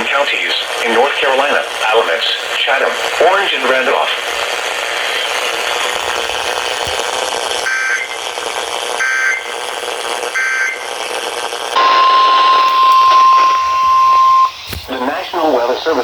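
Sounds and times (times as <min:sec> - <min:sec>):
radio static hiss: 0:00.0 - 0:16.0
screeching data bursts: 0:00.0 - 0:16.0
steady alarm tone: 0:07.6 - 0:16.0.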